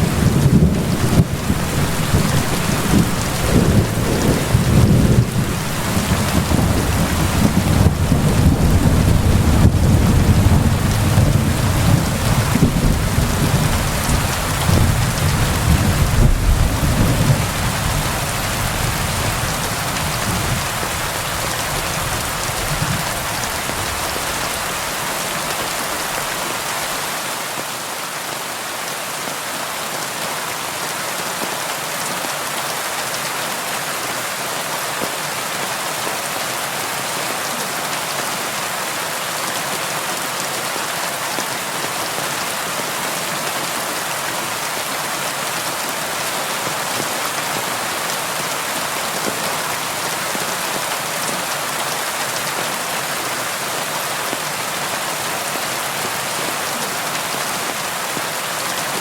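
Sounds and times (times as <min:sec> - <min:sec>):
rain on a window: 0:00.0 - 0:27.7.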